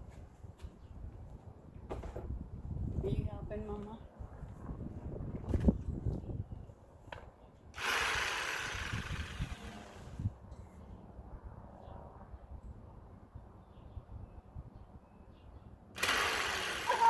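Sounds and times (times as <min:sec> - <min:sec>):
power tool whirring: 0:07.8 - 0:10.2, 0:16.0 - 0:17.0.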